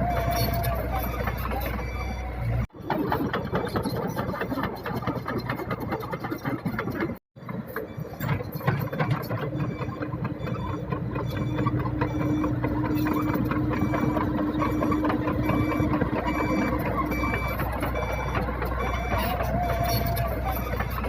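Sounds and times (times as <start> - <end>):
back-up alarm beeping: 0.0 - 2.7, 7.7 - 21.0
diesel engine running: 0.0 - 21.0.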